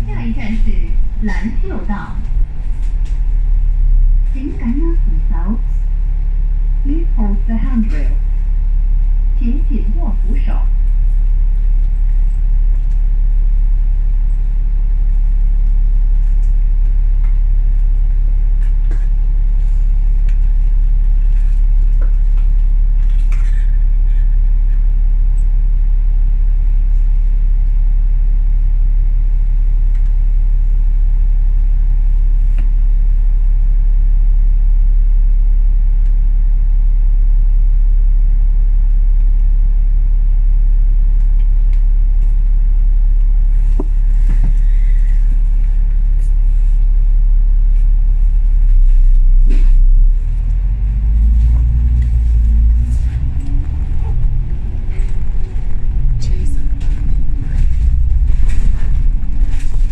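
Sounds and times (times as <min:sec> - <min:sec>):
bus engine and road rumble: 0:00.0 - 0:59.9
faint rattles: 0:50.7 - 0:59.9.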